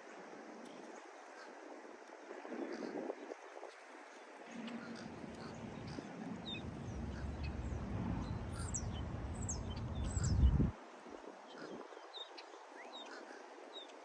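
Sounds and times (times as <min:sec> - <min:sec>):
small birds chirping: 0:04.1 - 0:10.7
low rumble: 0:05.4 - 0:10.7.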